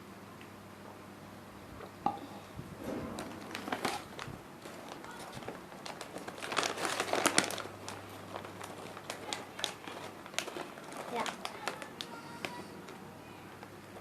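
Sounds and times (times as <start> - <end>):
plastic packaging crinkling: 3.2 - 13.8.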